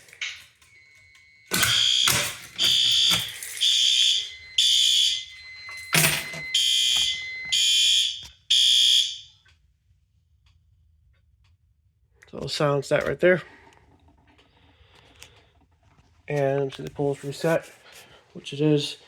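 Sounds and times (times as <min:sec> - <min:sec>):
fire alarm horns pulsing: 0:00.0 - 0:09.6.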